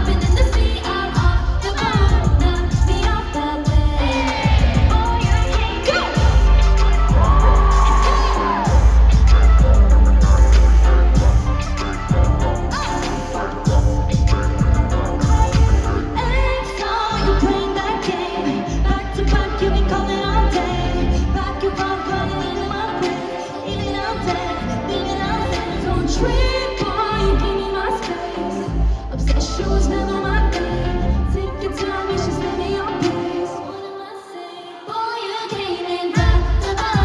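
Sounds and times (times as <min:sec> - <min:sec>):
live pop music with bass beat: 0:00.0 - 0:33.7, 0:35.5 - 0:37.0
person singing: 0:00.0 - 0:37.0
rising sweep: 0:04.0 - 0:18.9.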